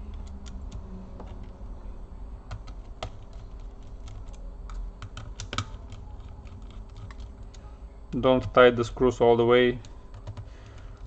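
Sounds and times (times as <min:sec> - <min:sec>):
small tools clicking on laptop: 0:00.0 - 0:01.6, 0:02.5 - 0:07.7, 0:09.8 - 0:11.0.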